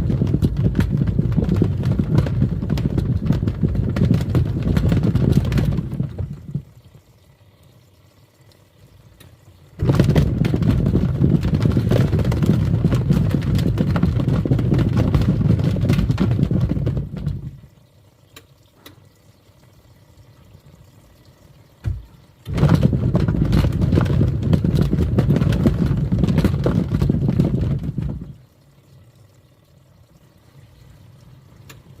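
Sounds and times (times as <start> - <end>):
washing machine churning water: 0.0 - 32.0.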